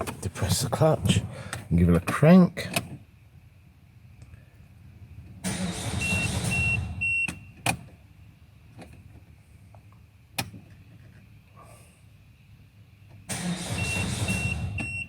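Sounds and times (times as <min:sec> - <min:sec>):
engine starter cranking: 0:05.4 - 0:07.0, 0:13.3 - 0:15.0.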